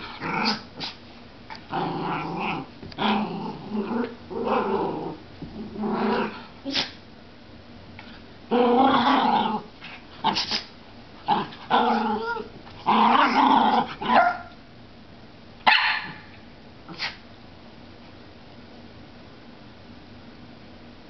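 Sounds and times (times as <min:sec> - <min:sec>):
dogs growling: 0:00.0 - 0:00.9, 0:01.5 - 0:06.5, 0:08.5 - 0:10.5, 0:11.2 - 0:14.2
dogs barking: 0:14.1 - 0:14.5, 0:15.7 - 0:16.3.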